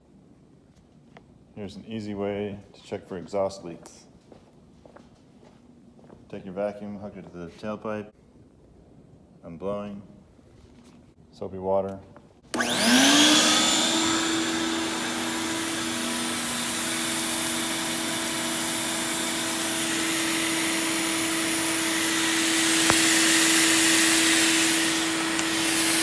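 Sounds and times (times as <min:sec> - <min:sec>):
shop vac motor whine: 0:12.5 - 0:26.0
rushing air: 0:20.0 - 0:26.0.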